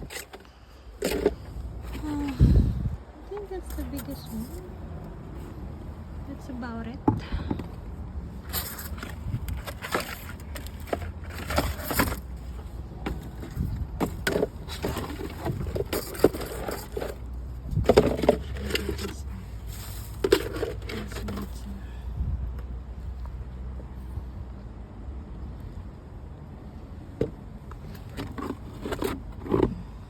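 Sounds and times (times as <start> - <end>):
plant pots knocking and scraping: 0.0 - 2.6, 3.2 - 4.7, 7.0 - 21.8, 27.2 - 30.0
low steady rumble: 0.0 - 30.0.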